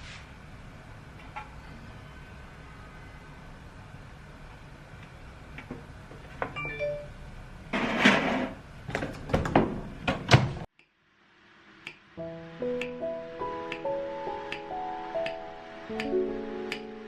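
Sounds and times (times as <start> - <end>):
soft plucked-note music: 12.2 - 17.0.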